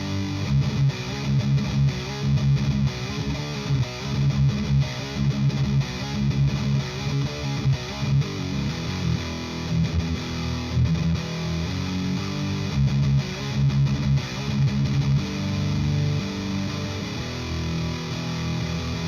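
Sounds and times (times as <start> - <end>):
distorted electric guitar riffing: 0.0 - 19.0.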